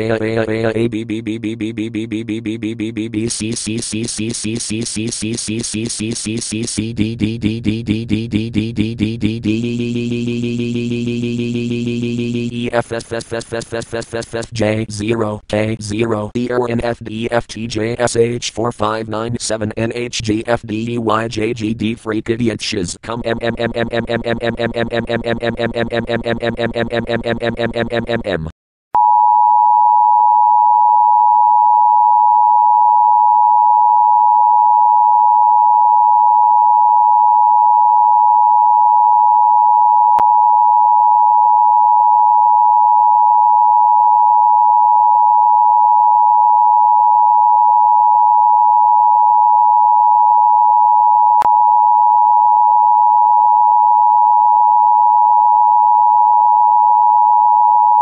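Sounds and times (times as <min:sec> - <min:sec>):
two-note electronic tone: 0:09.4 - 0:12.7.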